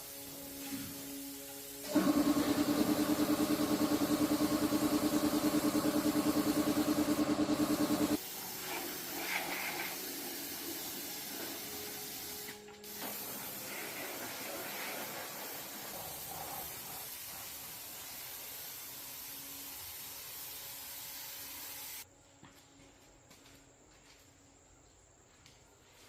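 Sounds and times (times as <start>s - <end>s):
faint hiss: 0.0s - 2.1s, 8.2s - 22.1s
machine humming with rapid pulse: 1.8s - 8.2s.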